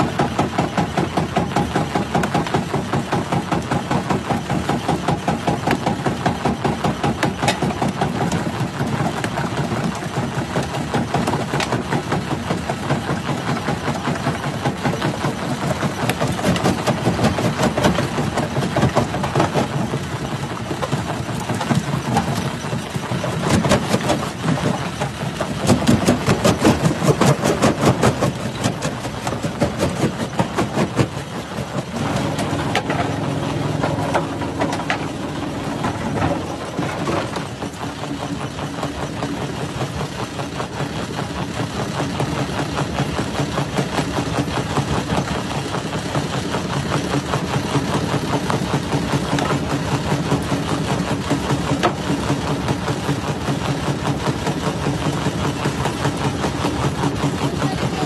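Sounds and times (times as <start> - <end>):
rock crusher machine running: 0.0 - 58.0.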